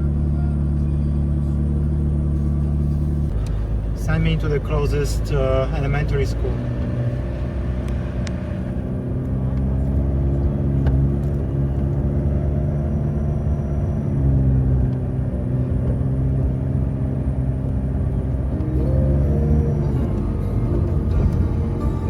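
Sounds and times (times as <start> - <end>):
car engine from inside cabin: 0.0 - 22.0
road rumble: 0.0 - 22.0.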